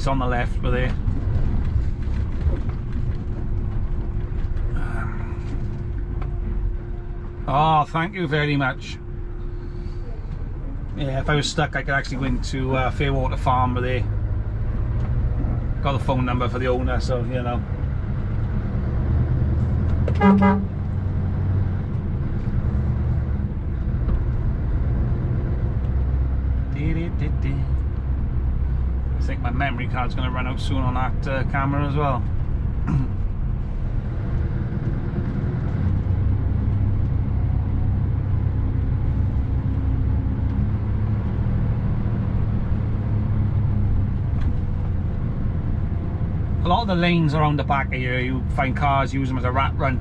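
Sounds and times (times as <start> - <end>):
lorry diesel engine rumbling: 0.0 - 50.0
vehicle horn toot: 20.2 - 20.7.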